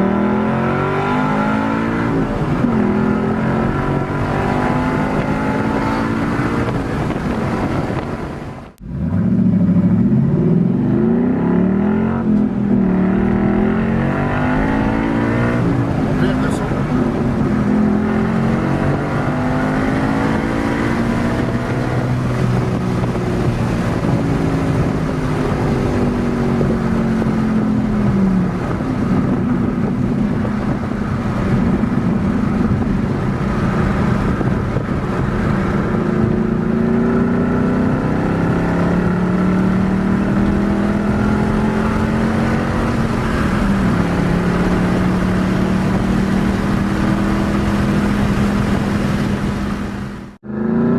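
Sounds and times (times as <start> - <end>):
car engine revving while driving: 0.0 - 50.9.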